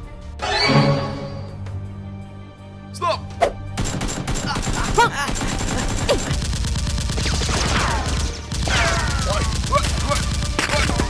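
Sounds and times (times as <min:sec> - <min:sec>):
rapid automatic gunfire: 0:03.8 - 0:11.0.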